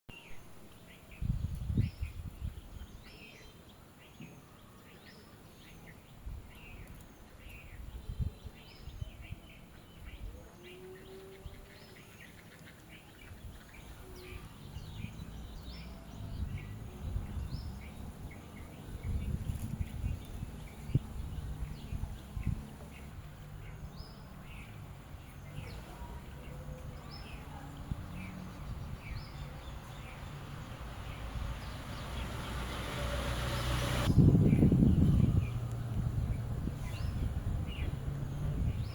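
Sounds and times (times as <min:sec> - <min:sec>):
small birds chirping: 0:00.1 - 0:38.9
low rumbling noise: 0:13.9 - 0:38.9.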